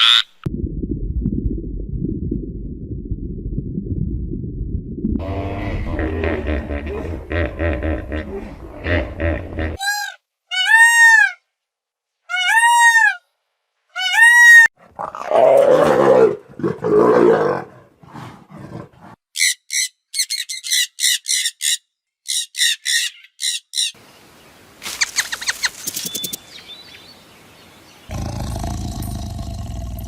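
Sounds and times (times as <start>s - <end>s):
rough roar-like animal calls: 5.2s - 9.8s, 28.1s - 30.0s
rising and falling animal calls: 12.3s - 13.2s.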